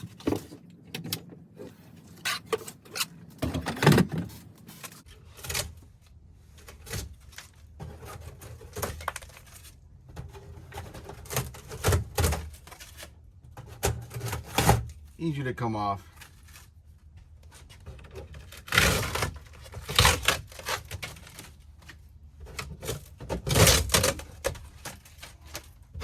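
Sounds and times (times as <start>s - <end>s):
building material being pried off: 17.6s - 21.6s, 22.4s - 26.0s.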